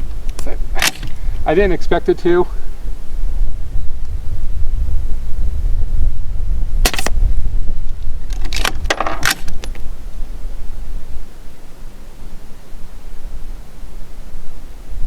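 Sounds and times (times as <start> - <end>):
low steady rumble: 0.0 - 15.0
rifle action clicking and clinking: 8.3 - 9.8.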